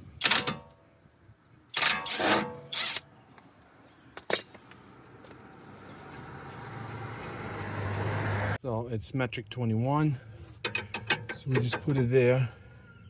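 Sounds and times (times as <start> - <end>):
metal tools clinking: 4.2 - 4.9, 10.6 - 12.0.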